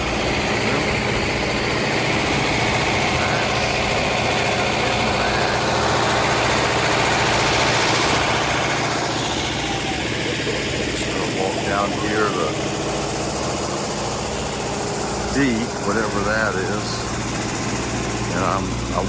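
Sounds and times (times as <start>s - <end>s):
train rumbling: 0.0s - 19.0s.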